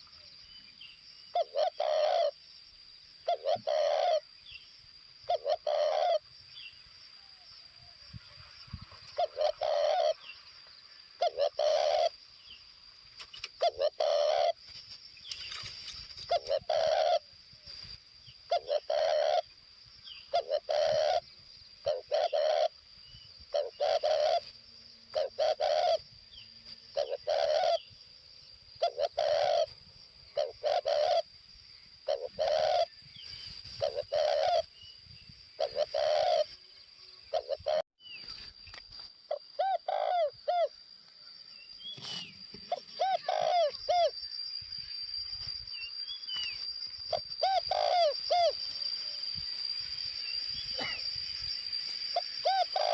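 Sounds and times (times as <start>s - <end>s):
dove cooing: 1.3s - 2.4s, 3.2s - 4.2s, 5.2s - 6.2s, 9.1s - 10.2s, 11.2s - 12.2s, 13.6s - 14.6s, 16.3s - 17.3s, 18.5s - 19.5s, 20.3s - 22.8s, 23.5s - 24.5s, 25.1s - 26.0s, 26.9s - 27.9s, 28.8s - 31.2s, 32.0s - 33.0s, 33.8s - 34.7s, 35.6s - 36.5s, 37.3s - 37.8s, 39.3s - 40.7s, 42.0s - 44.1s, 47.1s - 48.6s, 52.2s - 52.9s.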